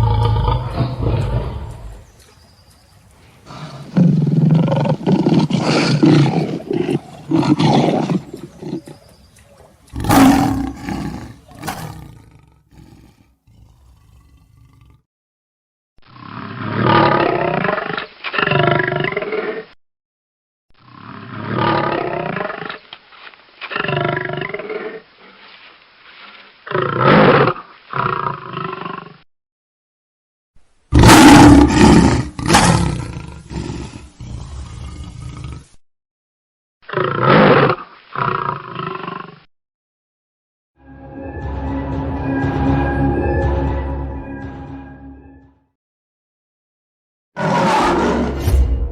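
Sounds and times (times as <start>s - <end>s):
lion roaring: 9.9s - 15.0s, 30.9s - 35.7s, 47.4s - 48.7s.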